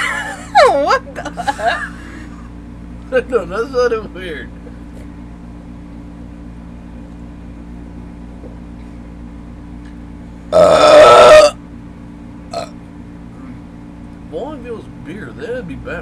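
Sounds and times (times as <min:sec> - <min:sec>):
low background hum: 0:00.0 - 0:16.0
person burping: 0:10.5 - 0:11.6, 0:12.5 - 0:12.7.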